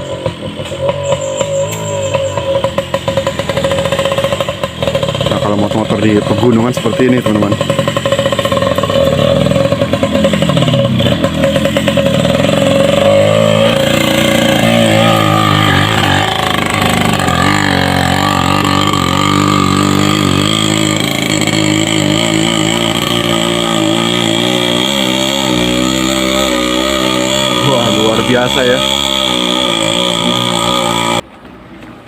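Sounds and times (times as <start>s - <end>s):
motorcycle engine revving: 0.0s - 31.3s.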